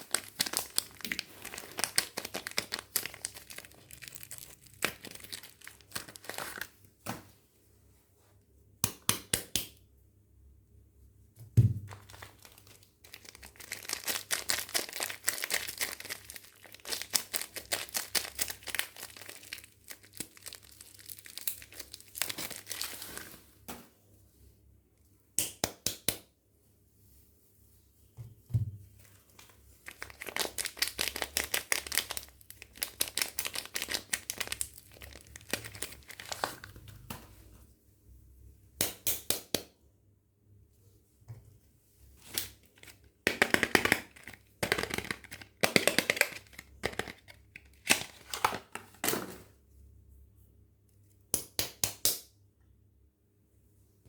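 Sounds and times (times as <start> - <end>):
packaging crinkling and tearing: 0.0 - 6.8, 11.9 - 23.4, 29.3 - 37.0, 42.2 - 49.2.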